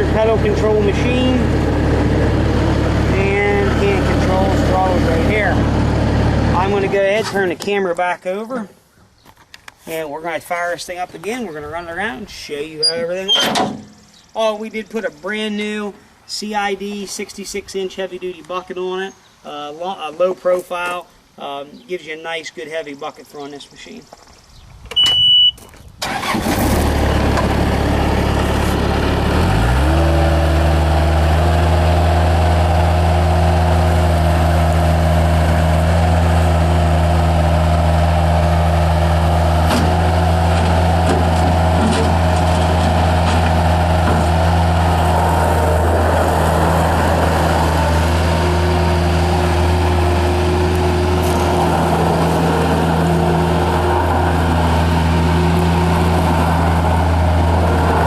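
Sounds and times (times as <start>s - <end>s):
diesel engine cranking and starting: 0.0s - 7.7s, 25.9s - 58.0s.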